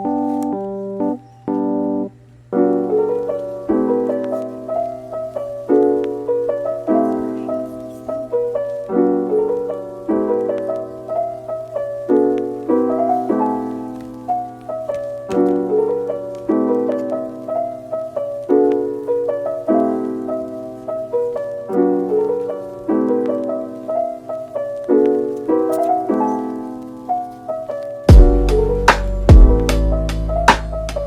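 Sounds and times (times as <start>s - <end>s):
soft piano music: 0.0s - 31.0s.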